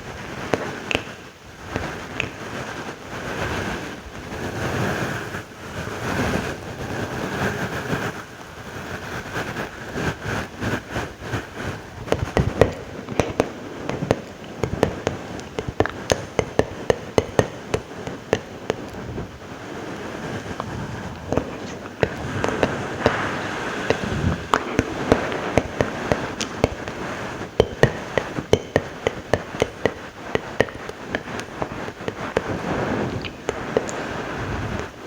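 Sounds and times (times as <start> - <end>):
wet mouth clicks and pops: 0.5 - 1.3, 2.2 - 2.4, 23.8 - 34.0
wet mouth smacking: 0.6 - 1.3, 2.1 - 2.4, 20.5 - 34.1.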